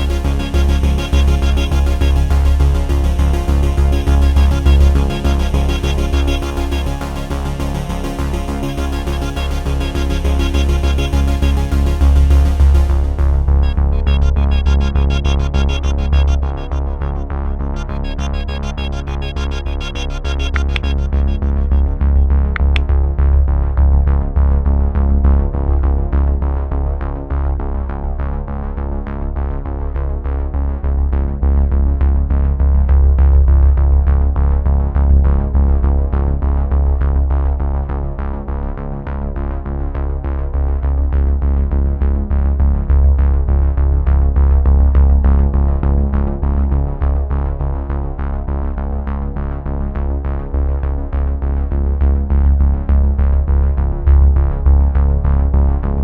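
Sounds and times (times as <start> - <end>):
synthesizer background music: 0.0 - 23.5.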